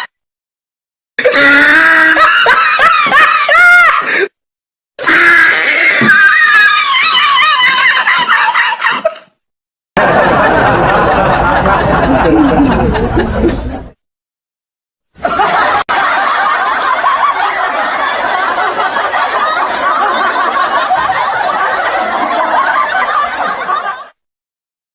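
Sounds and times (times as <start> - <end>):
laughter sound effects: 2.2 - 4.1, 7.3 - 9.3, 10.0 - 14.0, 15.2 - 24.2.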